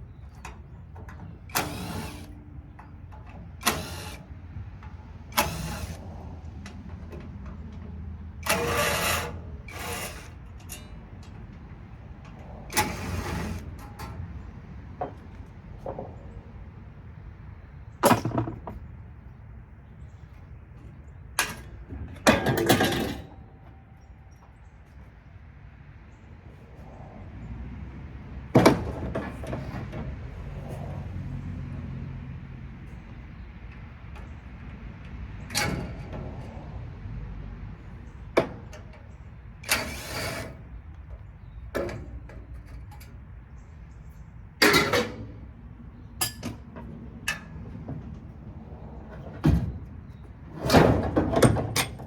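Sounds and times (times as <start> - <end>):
metal knocks and clanks: 0.1 - 17.0, 17.6 - 19.0, 20.1 - 24.7, 28.4 - 36.9, 44.6 - 52.0.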